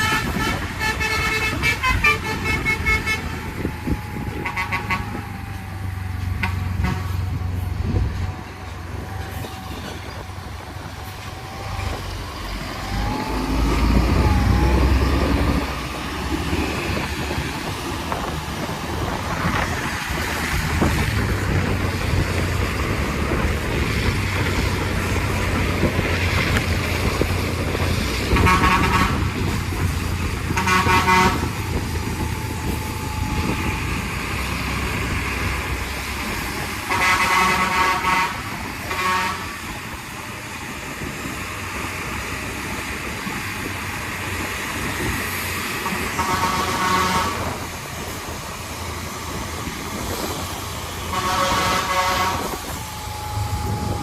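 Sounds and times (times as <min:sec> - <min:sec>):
musical bus horn blasts: 0:00.0 - 0:05.2, 0:06.4 - 0:07.4, 0:28.3 - 0:29.6, 0:30.5 - 0:31.7, 0:36.8 - 0:39.7, 0:45.8 - 0:47.6, 0:51.0 - 0:52.8
bus engine rumble: 0:00.0 - 0:54.0.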